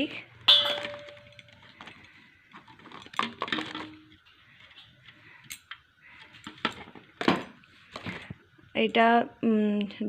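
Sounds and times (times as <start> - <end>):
plastic parts clicking and knocking: 0.5 - 4.8.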